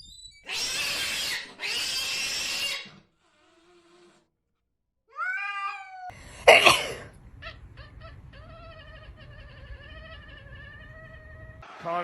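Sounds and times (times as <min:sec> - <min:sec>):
cat meowing and yowling: 0:05.1 - 0:06.2, 0:07.4 - 0:11.6.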